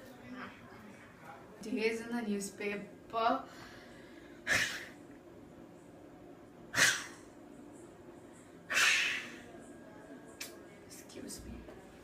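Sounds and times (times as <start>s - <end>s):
person sneezing: 4.5s - 5.0s, 6.7s - 7.2s, 8.7s - 9.4s.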